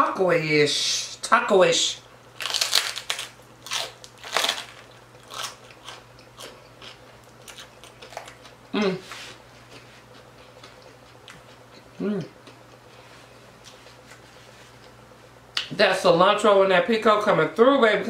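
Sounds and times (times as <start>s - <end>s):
crunchy chewing of fried pork rind: 2.3s - 15.2s
person humming: 8.7s - 9.1s, 12.0s - 12.3s.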